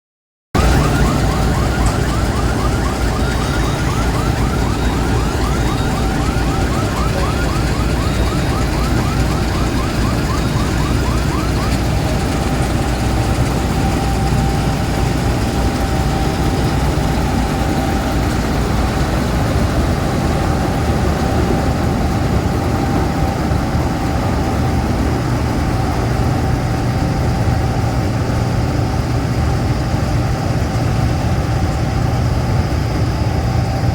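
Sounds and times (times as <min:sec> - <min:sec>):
electronic warbling alarm: 0:00.6 - 0:28.0
harvester engine running: 0:00.6 - 0:33.9.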